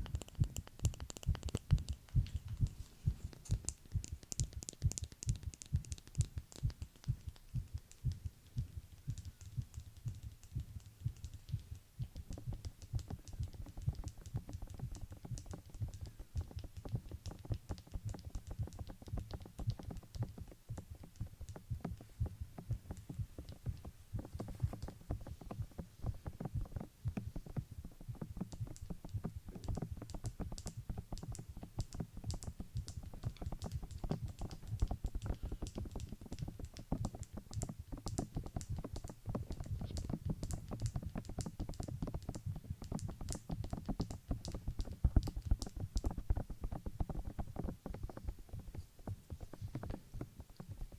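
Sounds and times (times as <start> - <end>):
fast irregular clicking: 0.0 - 50.9.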